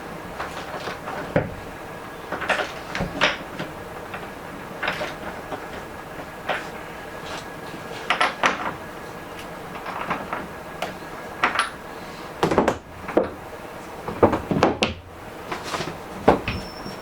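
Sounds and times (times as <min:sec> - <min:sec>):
knocks and clunks on hard surfaces: 0:12.4 - 0:13.4, 0:14.1 - 0:15.0.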